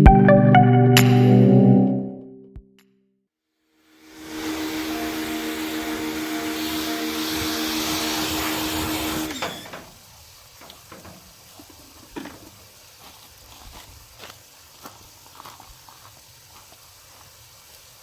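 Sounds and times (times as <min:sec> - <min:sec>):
pressure washer motor hum: 0:03.9 - 0:12.5
water spray hissing: 0:03.9 - 0:18.0.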